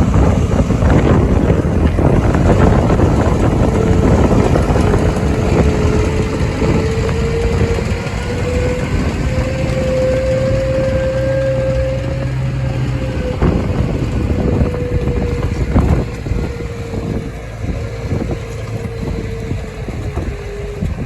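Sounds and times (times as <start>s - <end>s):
farm machinery engine whine: 0.0s - 21.0s
wind buffeting microphone: 0.0s - 21.0s.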